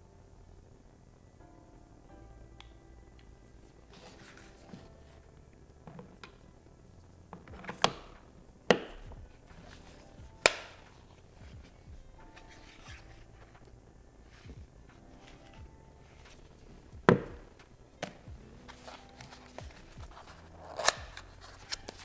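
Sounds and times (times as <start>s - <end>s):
quiet background music: 0.0s - 22.0s
packaging rustling: 9.3s - 22.0s.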